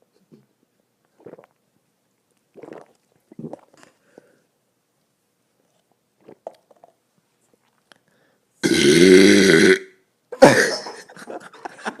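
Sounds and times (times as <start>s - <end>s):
man belching: 8.6s - 11.0s.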